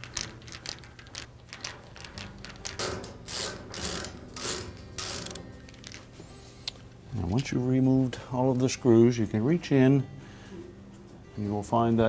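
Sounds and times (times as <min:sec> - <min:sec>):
screws scraping on sheet metal: 0:02.8 - 0:05.5.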